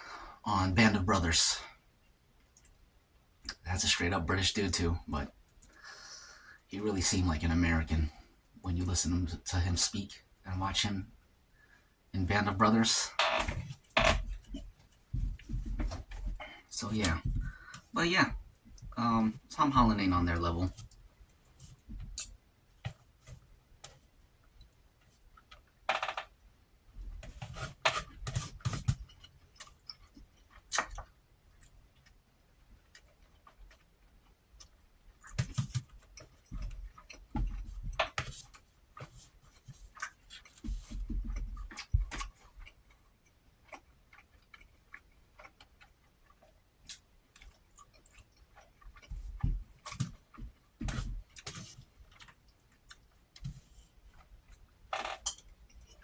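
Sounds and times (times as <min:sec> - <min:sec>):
crunching and munching: 0:41.4 - 0:54.7
chewing with mouth clicks: 0:41.6 - 0:50.4.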